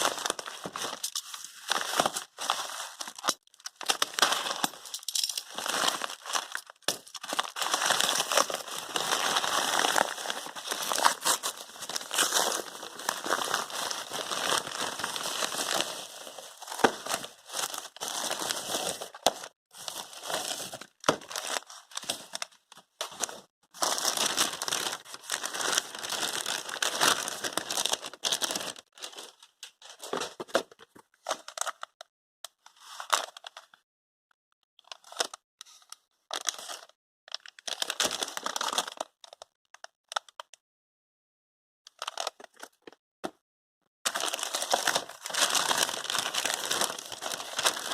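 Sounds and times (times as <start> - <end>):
packaging crinkling and rustling: 0.0 - 31.8, 44.1 - 47.9.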